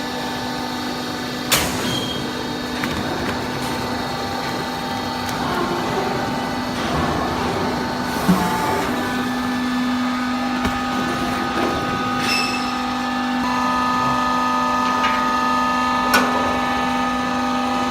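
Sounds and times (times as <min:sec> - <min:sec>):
baler machine hum: 0:00.0 - 0:16.0.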